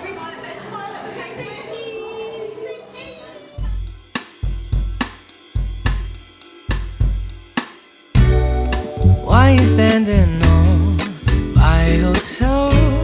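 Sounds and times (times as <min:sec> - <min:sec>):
pop drum groove: 0:03.6 - 0:13.0.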